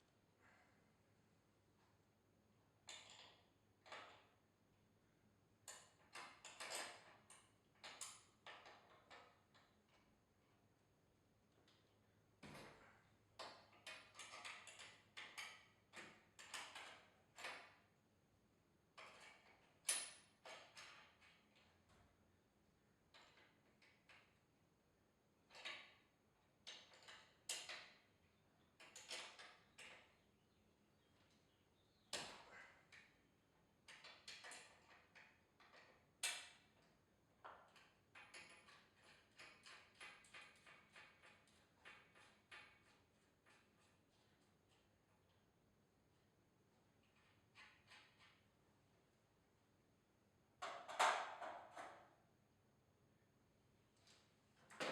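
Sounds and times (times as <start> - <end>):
tools knocking and scraping metal: 19.0 - 21.7, 33.9 - 45.3, 47.0 - 48.5, 50.6 - 52.1.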